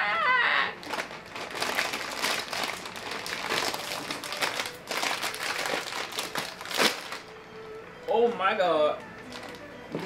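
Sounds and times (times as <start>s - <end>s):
foil chip bag crinkling: 0.8s - 7.4s, 9.2s - 9.7s.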